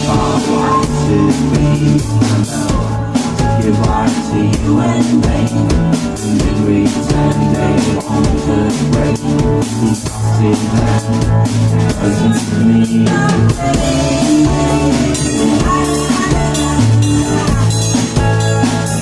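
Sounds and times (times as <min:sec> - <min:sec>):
bass guitar: 0:00.0 - 0:19.0
drum kit: 0:00.0 - 0:19.0
electric guitar: 0:00.0 - 0:19.0.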